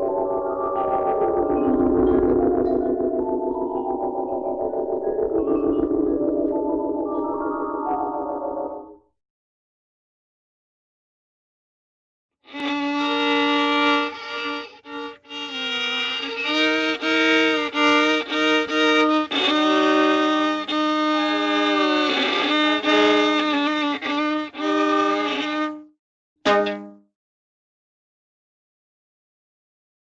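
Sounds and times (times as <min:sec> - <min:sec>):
violin melody: 0:00.0 - 0:09.0, 0:12.5 - 0:27.0.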